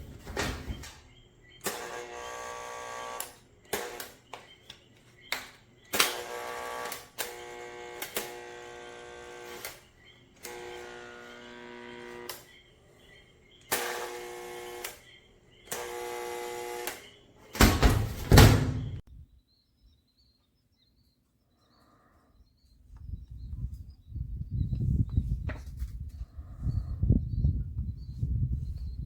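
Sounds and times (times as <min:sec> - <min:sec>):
jigsaw motor whining: 0:01.7 - 0:04.2, 0:06.0 - 0:12.5, 0:13.7 - 0:15.0, 0:15.7 - 0:17.0.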